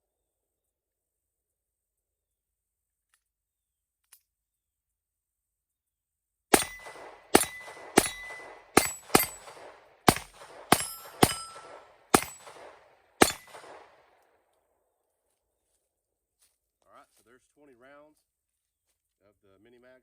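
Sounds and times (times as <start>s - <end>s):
pistol shots echoing: 6.5s - 14.2s.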